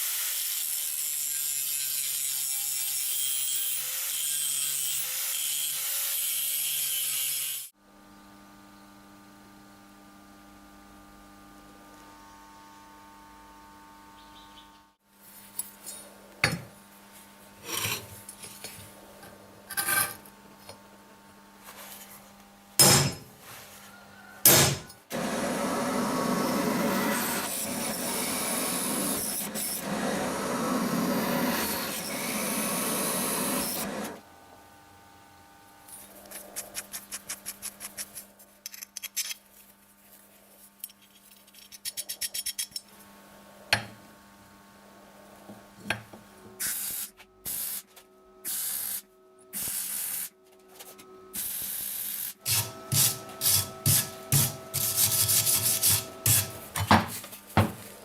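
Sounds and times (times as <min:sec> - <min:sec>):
filing metal: 0:25.1 - 0:34.2, 0:52.5 - 0:56.6.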